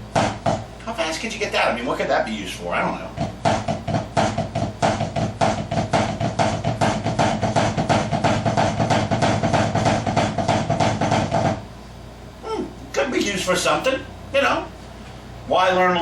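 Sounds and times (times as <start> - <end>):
snare drum triplet pattern: 0.0 - 0.7, 3.1 - 11.6.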